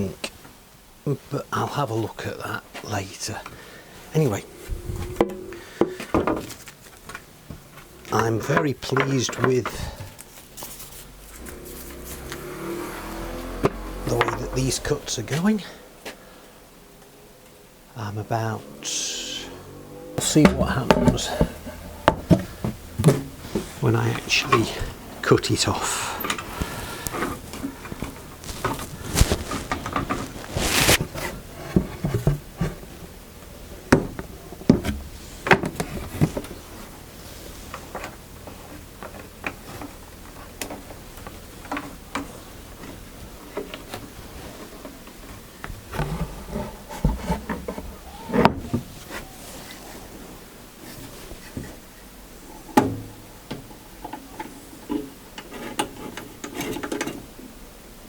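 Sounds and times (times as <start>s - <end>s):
short scrape or rustle: 10.4s - 14.6s, 26.5s - 31.4s.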